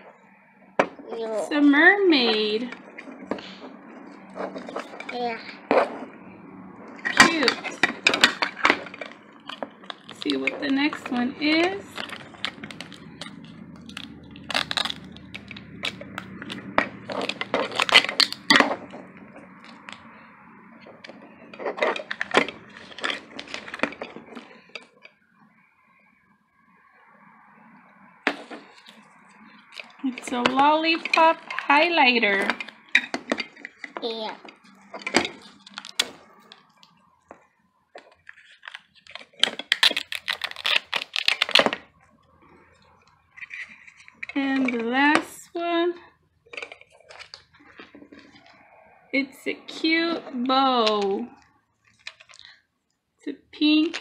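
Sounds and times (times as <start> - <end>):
packaging crinkling: 11.8 - 18.9, 38.0 - 41.9.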